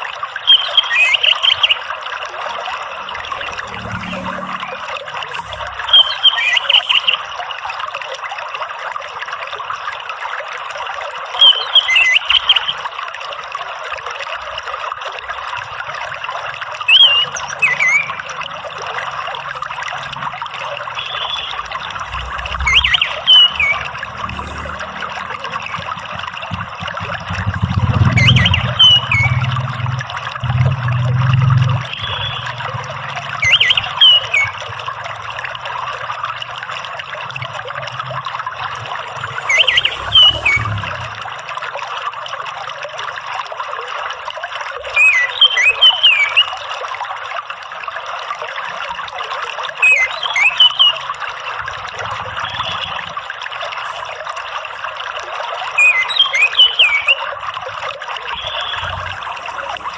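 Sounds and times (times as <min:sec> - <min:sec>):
water trickling: 0:00.0 - 0:59.9
bird whistling phrases: 0:00.5 - 0:01.8, 0:05.4 - 0:07.2, 0:11.4 - 0:12.8, 0:16.9 - 0:18.4, 0:20.9 - 0:24.0, 0:28.1 - 0:29.5, 0:33.4 - 0:34.6, 0:39.3 - 0:40.8, 0:45.0 - 0:46.5, 0:49.8 - 0:51.0, 0:55.8 - 0:57.3.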